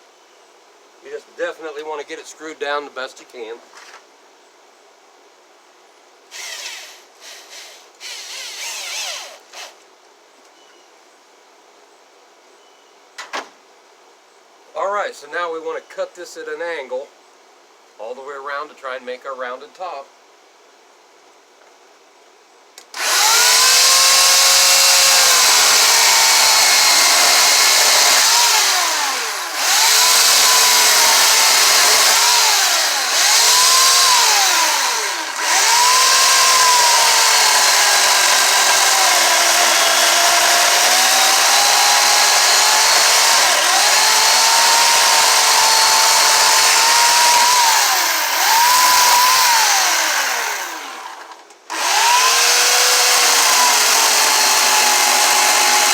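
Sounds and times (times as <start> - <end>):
chainsaw cutting wood: 6.3 - 9.8, 22.9 - 55.9.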